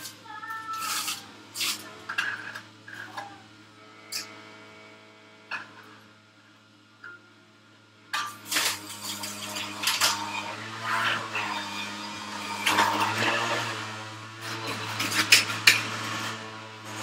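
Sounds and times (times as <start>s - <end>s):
leaves crunching in juicer: 0.0s - 3.4s, 8.2s - 17.0s
electric juicer humming: 0.0s - 17.0s.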